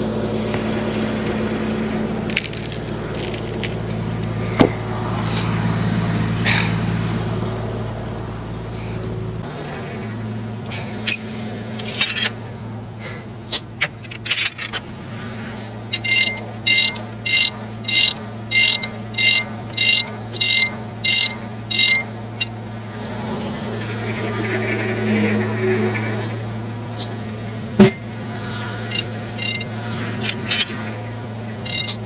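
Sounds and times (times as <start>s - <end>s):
tractor engine running: 0.0s - 23.3s, 26.4s - 32.0s
metallic clinks: 11.8s - 12.4s, 15.8s - 22.6s, 28.8s - 30.9s, 31.6s - 32.0s.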